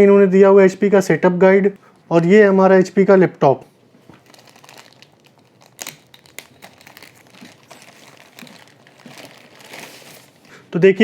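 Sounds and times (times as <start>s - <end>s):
packaging crinkling and rustling: 3.8s - 10.7s.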